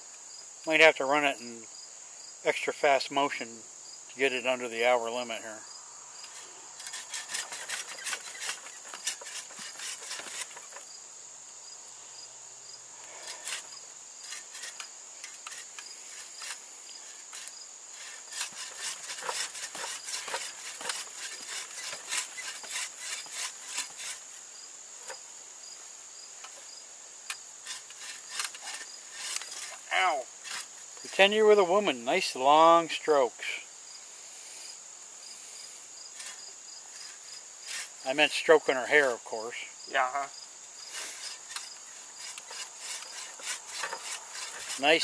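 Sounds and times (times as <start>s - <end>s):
crickets trilling: 0.0s - 45.0s
hand saw cutting wood: 6.3s - 10.9s, 13.1s - 24.4s, 27.6s - 31.3s, 36.2s - 38.0s, 40.9s - 45.0s.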